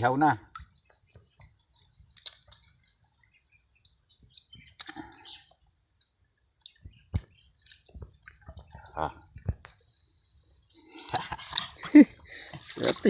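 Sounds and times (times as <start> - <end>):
mud and water squelching: 0.4 - 3.2, 6.6 - 10.2, 10.8 - 13.0.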